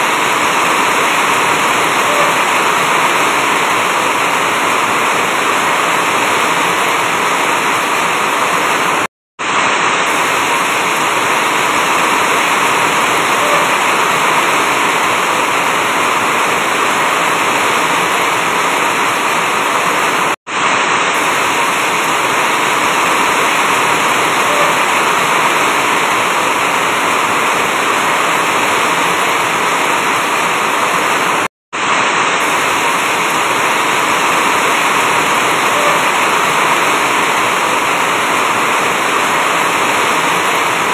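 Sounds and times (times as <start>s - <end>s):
heavy rain on a roof: 0.0s - 40.9s.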